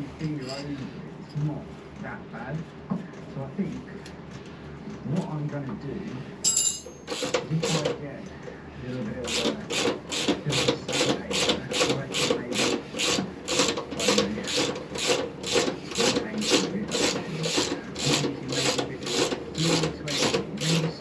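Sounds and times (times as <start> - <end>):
hand tool rasping strokes: 9.3 - 21.0.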